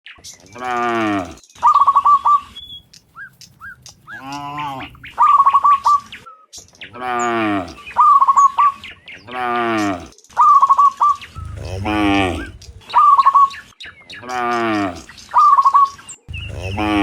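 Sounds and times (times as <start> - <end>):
cattle mooing: 0.6 - 1.4, 9.3 - 10.1, 11.4 - 12.8, 14.2 - 15.1, 16.3 - 17.0
high chirping notes: 11.4 - 13.6, 14.4 - 17.0.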